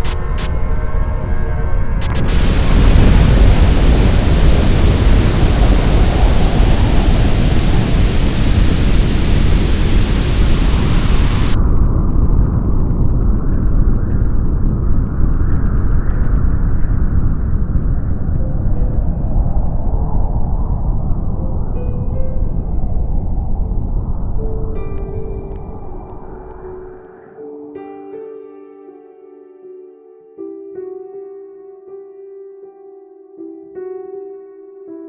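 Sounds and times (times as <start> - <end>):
static-like hiss: 0.0 - 0.5, 2.0 - 11.6
deep rumble: 0.0 - 27.1.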